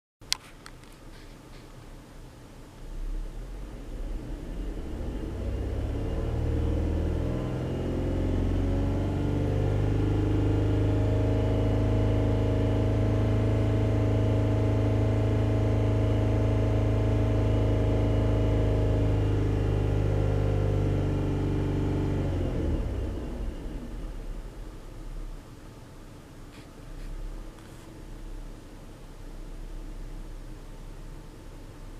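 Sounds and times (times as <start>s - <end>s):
car engine revving: 3.0s - 25.2s.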